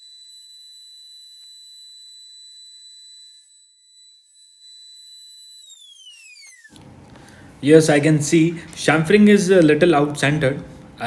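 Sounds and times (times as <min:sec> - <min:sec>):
router spindle whine: 0:00.0 - 0:07.4.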